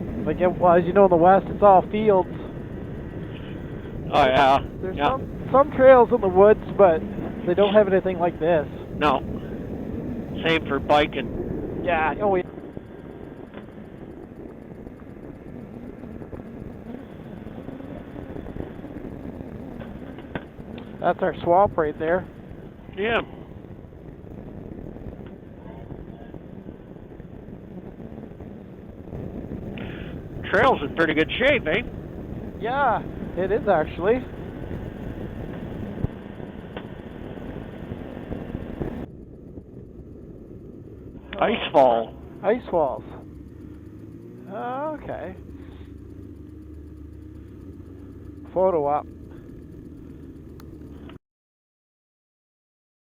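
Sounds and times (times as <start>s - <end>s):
snowmobile engine droning: 0.0s - 51.2s
faint clicks: 12.5s - 21.0s, 49.2s - 51.2s.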